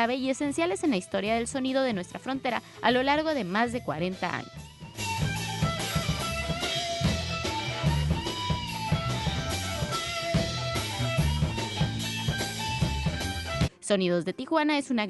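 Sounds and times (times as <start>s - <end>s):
guitar: 0.0s - 13.9s
band music: 3.3s - 13.7s
drums beat: 4.5s - 13.7s.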